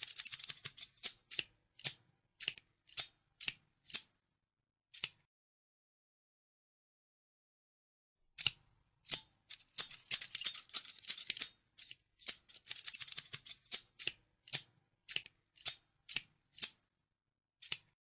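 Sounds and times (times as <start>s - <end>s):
scissors snipping: 0.0s - 4.1s, 5.0s - 5.3s, 8.4s - 16.8s, 17.6s - 18.0s.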